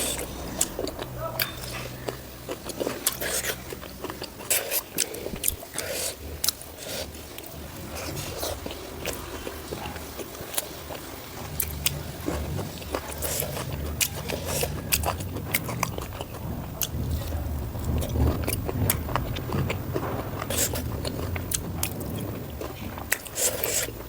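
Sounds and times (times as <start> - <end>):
low rumble: 0.0 - 4.2, 13.7 - 23.1
person chewing with mouth smacks: 0.0 - 24.0.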